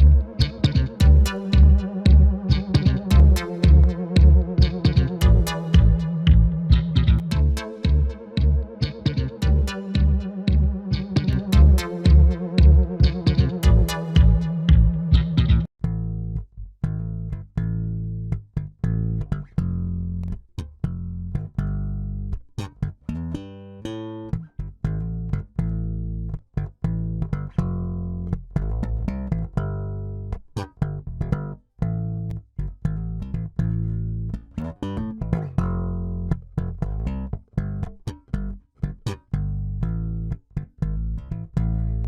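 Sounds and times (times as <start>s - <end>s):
electric bass guitar: 0.0s - 42.0s.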